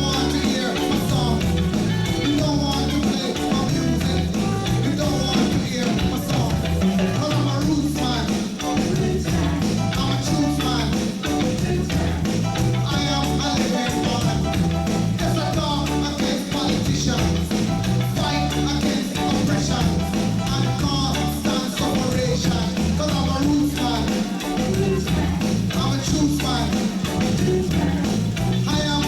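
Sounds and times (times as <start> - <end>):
live reggae band playing: 0.0 - 29.0.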